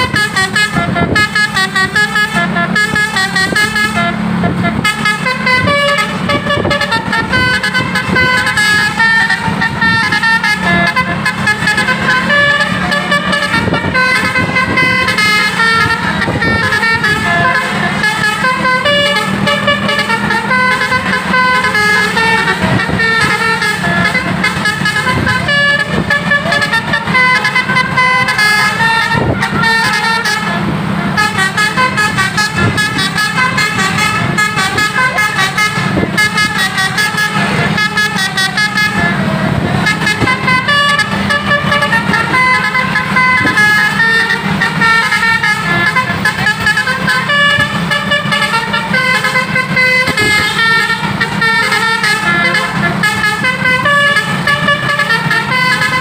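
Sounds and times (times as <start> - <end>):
multi-tone bus horn melody: 0.0 - 56.0.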